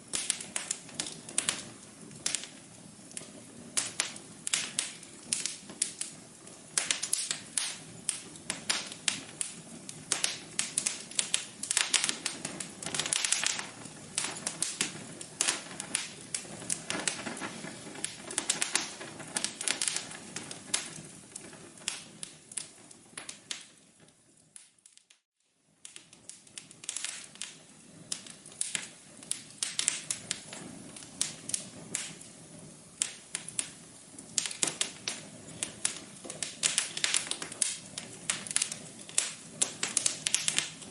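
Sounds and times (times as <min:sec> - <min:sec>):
wood fire crackling: 0:00.0 - 0:40.9.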